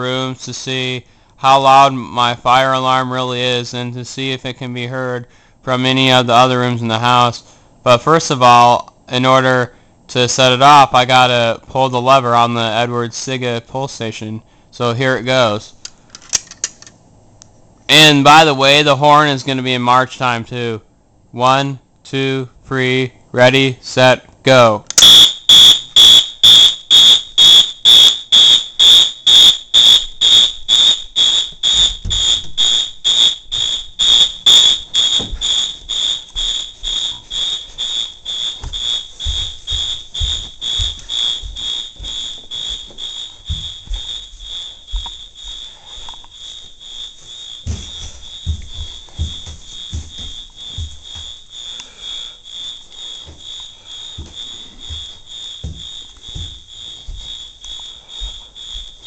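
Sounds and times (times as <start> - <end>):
fire alarm horn pulsing: 25.0 - 59.0.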